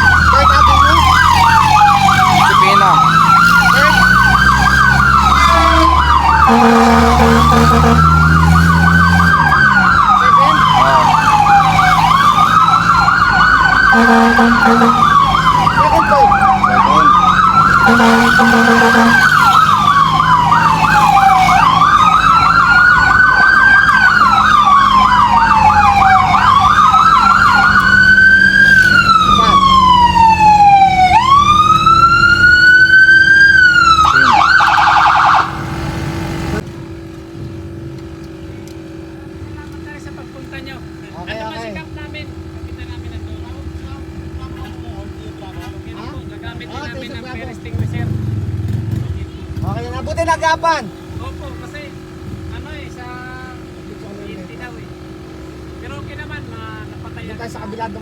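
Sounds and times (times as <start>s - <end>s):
electronic siren wailing: 0.0s - 36.6s
fire truck horn honks: 1.3s - 30.4s.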